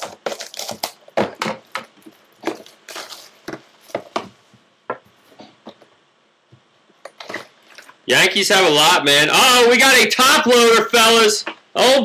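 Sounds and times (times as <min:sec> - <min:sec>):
packaging tearing and crackling: 0:00.0 - 0:01.4.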